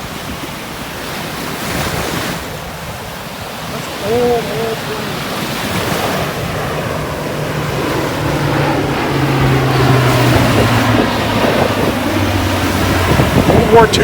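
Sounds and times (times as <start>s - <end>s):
ocean surf washing in: 0.0s - 14.0s
wind buffeting microphone: 0.0s - 14.0s
low hum: 5.2s - 14.0s.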